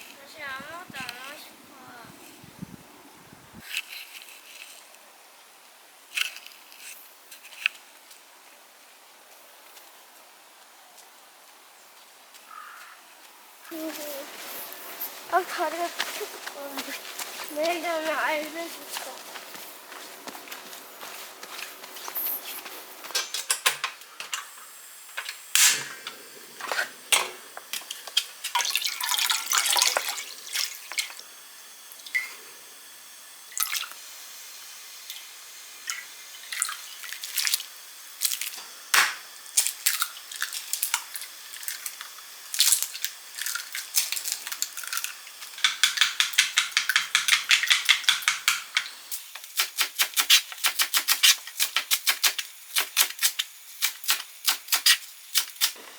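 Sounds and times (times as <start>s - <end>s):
objects clicking and knocking: 43.8s - 52.4s
rapid tapping: 45.6s - 48.9s.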